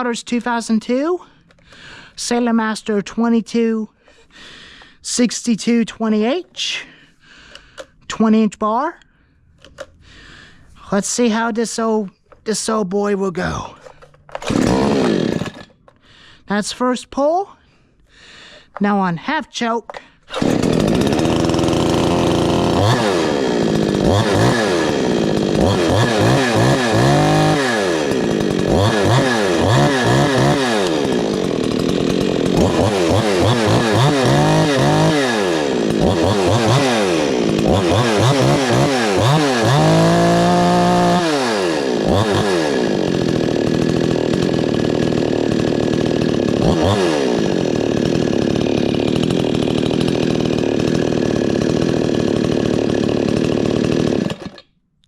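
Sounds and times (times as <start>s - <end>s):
chainsaw revving and idling: 13.4s - 15.8s, 19.9s - 54.7s.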